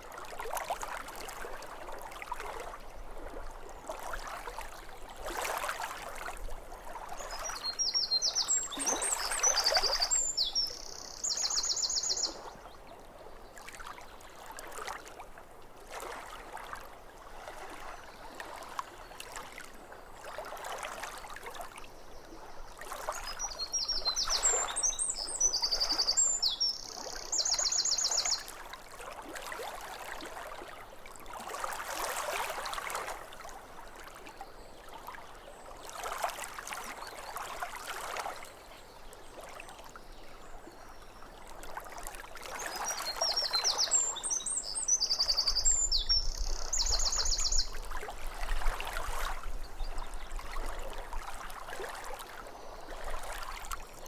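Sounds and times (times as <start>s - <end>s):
small waves lapping at shore: 0.0s - 54.0s
songbird singing with trill: 7.2s - 12.5s, 23.2s - 28.5s, 42.6s - 47.8s.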